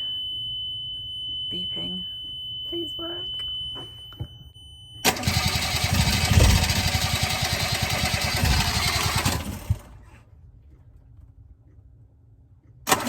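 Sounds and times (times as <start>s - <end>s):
alarm beep: 0.0s - 5.8s
diesel engine cranking: 5.0s - 10.1s.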